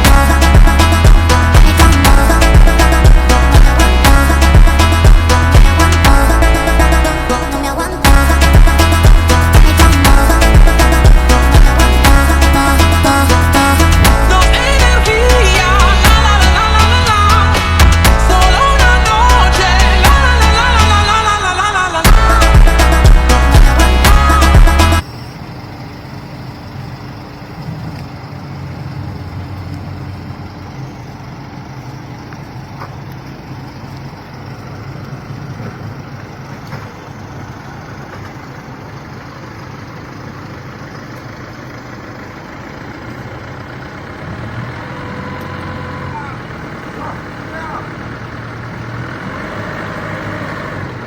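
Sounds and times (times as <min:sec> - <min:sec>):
song playing: 0:00.0 - 0:25.0
heavy machine engine idling: 0:00.0 - 0:51.0.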